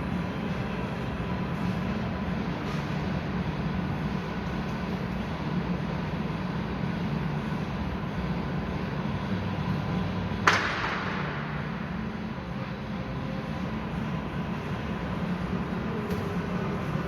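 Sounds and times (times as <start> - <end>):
low mechanical hum: 0.0 - 17.0.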